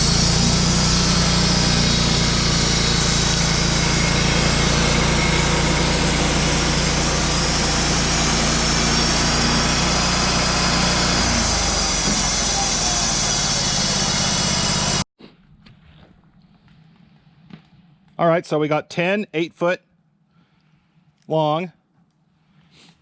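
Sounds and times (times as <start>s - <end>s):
sawmill engine running: 0.0s - 15.1s.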